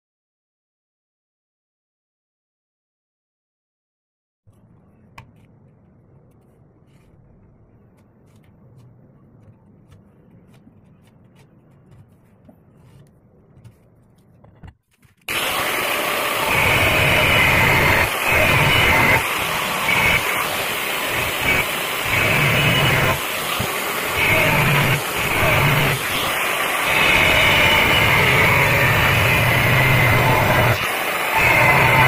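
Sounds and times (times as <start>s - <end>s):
loud whining machine: 15.3s - 32.0s.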